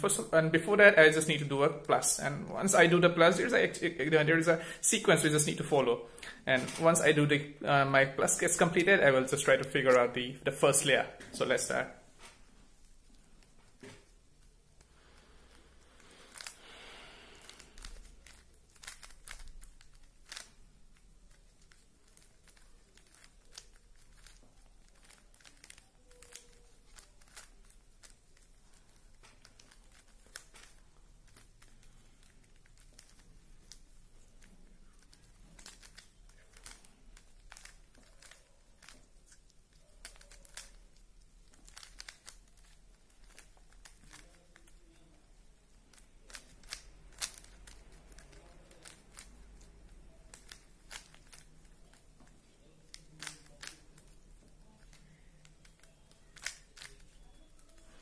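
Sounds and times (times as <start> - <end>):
puzzle cube clicking as twisted: 16.1 - 16.7, 17.3 - 44.9, 45.9 - 57.9.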